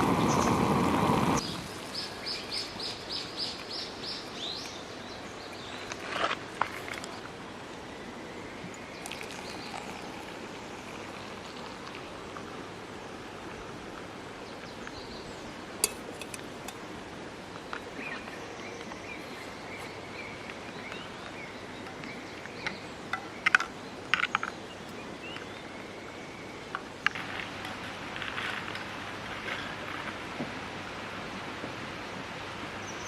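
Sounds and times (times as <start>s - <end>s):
stream rushing: 0.0s - 5.7s.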